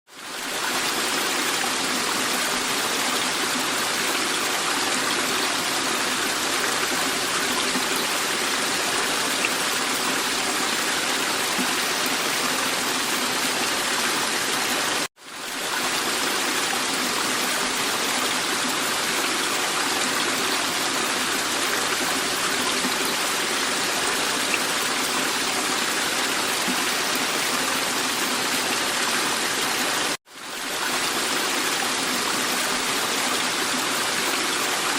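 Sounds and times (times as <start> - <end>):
waterfall rushing and splashing: 0.1 - 34.9.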